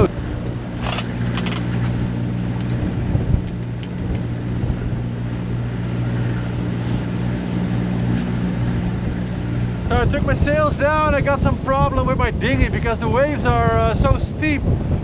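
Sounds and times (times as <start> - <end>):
boat engine running steadily: 0.0 - 15.0
water noise: 0.0 - 15.0
wind: 0.0 - 15.0.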